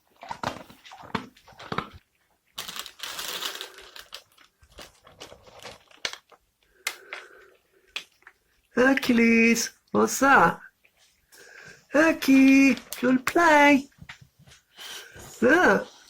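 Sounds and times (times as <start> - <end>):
rustling: 0.0 - 6.4.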